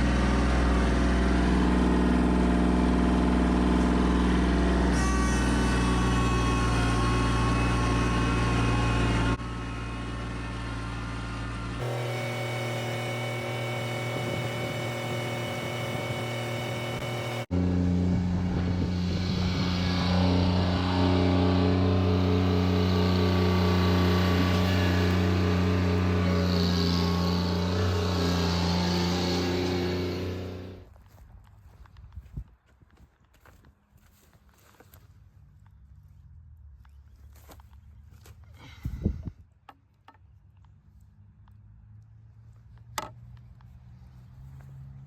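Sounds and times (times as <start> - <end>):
chainsaw ripping a log: 11.7 - 30.8.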